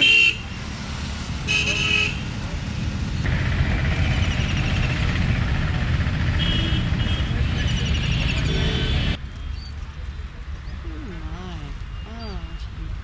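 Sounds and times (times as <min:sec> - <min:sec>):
low vehicle rumble: 0:02.4 - 0:10.9
car horn toots: 0:06.3 - 0:07.8.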